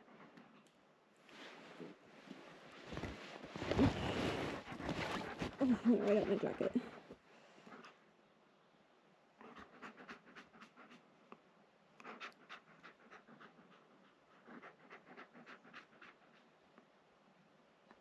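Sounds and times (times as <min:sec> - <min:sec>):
dog panting: 0:04.0 - 0:08.0, 0:09.4 - 0:11.1, 0:12.0 - 0:16.5.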